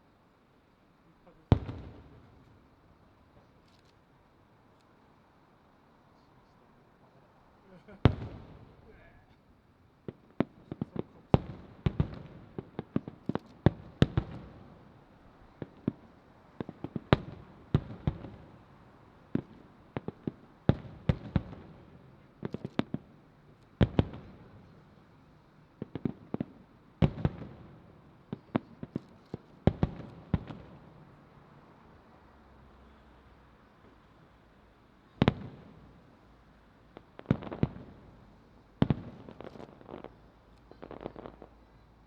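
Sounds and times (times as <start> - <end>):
firework shells bursting: 38.8 - 41.6.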